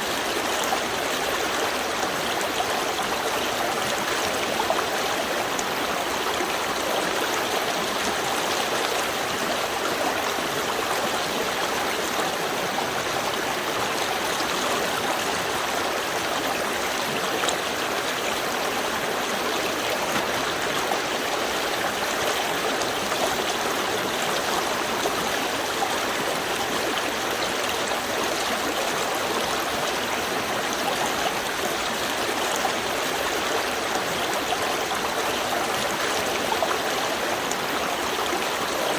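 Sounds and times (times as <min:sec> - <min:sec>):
stream flowing over stones: 0:00.0 - 0:38.9.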